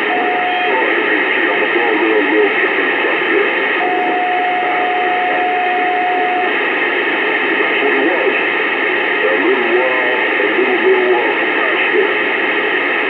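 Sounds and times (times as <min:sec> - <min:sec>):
steady tone: 0:00.0 - 0:01.4, 0:03.7 - 0:07.4
telephone line hiss: 0:00.0 - 0:08.4.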